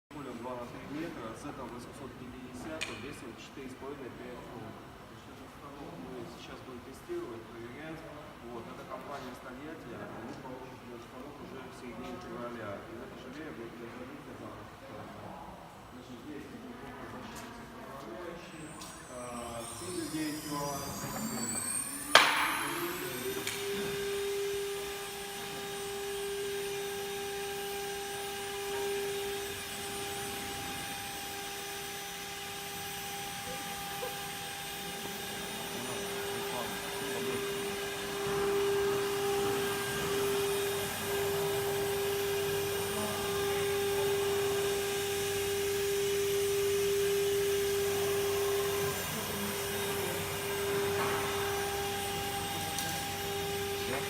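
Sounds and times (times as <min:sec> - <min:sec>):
router spindle whine: 0:18.2 - 0:54.0.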